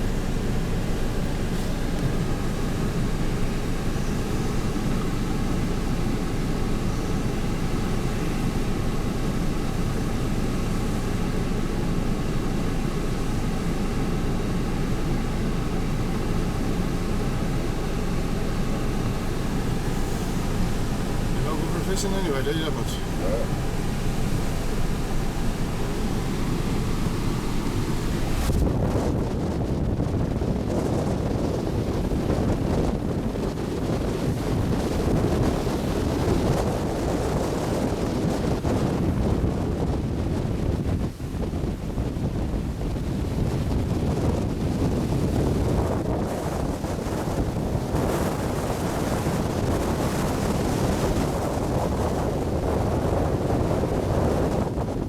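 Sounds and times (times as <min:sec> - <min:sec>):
faint steady hum: 0:00.0 - 0:29.3
wind buffeting microphone: 0:00.0 - 0:55.0
waves rushing: 0:16.2 - 0:28.8.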